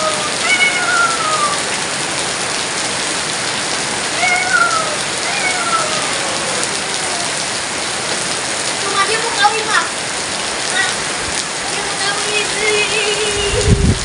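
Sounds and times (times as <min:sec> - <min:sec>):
cat meowing: 0:00.0 - 0:01.8, 0:04.1 - 0:07.6
heavy rain falling: 0:00.0 - 0:14.0.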